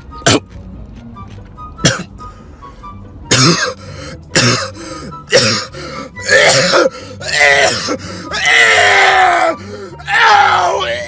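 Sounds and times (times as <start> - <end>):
person clearing throat: 0.2 - 0.4, 1.8 - 2.1, 3.3 - 5.7, 6.3 - 6.9
person coughing: 1.8 - 2.1, 3.3 - 5.7, 6.3 - 6.9, 7.6 - 8.0.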